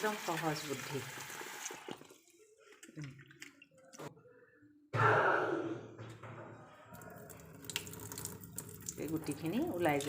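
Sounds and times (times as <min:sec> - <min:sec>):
tap water running into sink: 0:00.0 - 0:02.3, 0:07.0 - 0:10.0.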